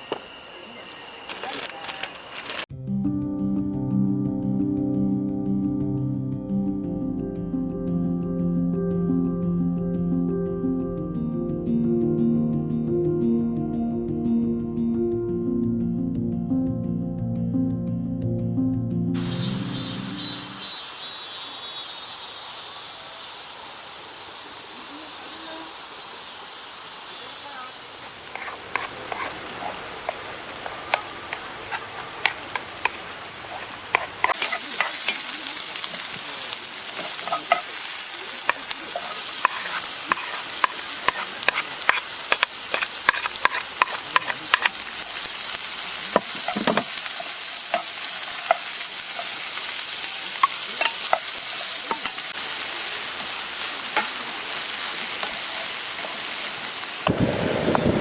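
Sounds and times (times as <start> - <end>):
food frying with pops and crackles: 0.0 - 2.7, 19.2 - 58.0.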